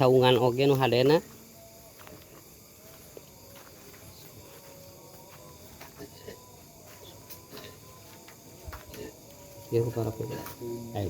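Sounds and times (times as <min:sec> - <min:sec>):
crickets trilling: 0:00.0 - 0:11.0.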